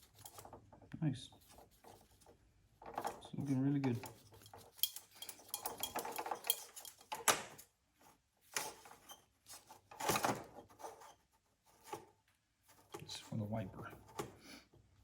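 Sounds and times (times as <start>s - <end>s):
wires rustling: 0.0s - 14.3s
metal connectors clinking: 3.9s - 7.7s.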